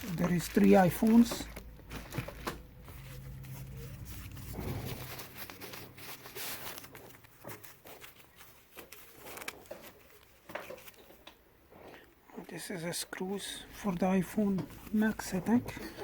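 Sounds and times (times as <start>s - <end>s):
packaging rustling and clicks: 0.0s - 11.4s.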